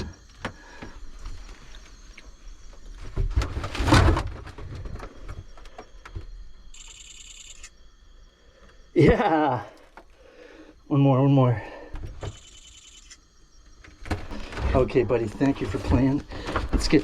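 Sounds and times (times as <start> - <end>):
handling knocks and rustling: 13.8 - 17.0.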